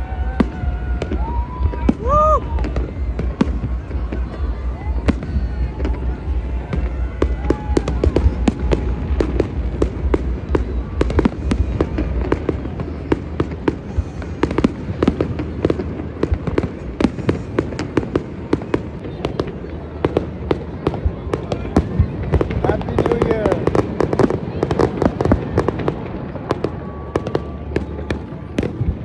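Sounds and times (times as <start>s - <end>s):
steady low rumble: 0.0s - 22.7s
fireworks bangs and crackling: 0.0s - 29.0s.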